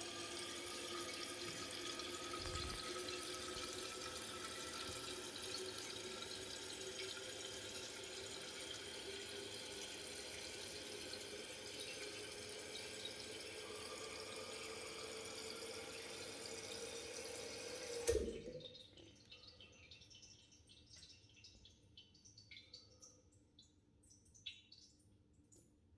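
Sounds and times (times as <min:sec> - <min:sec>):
toilet tank hissing: 0:00.0 - 0:18.6.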